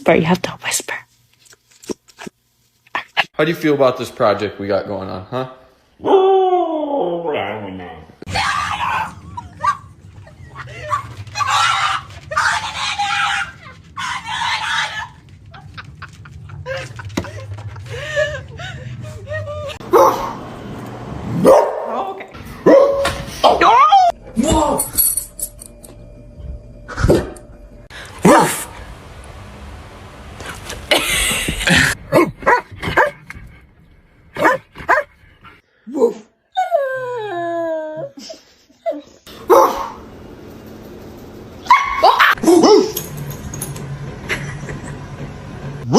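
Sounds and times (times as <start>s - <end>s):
dog barking and yipping: 10.6s - 15.2s, 19.8s - 20.4s, 21.4s - 22.0s, 22.6s - 24.0s, 28.2s - 28.7s, 32.1s - 33.2s, 34.4s - 35.1s, 39.4s - 40.0s, 41.6s - 43.0s.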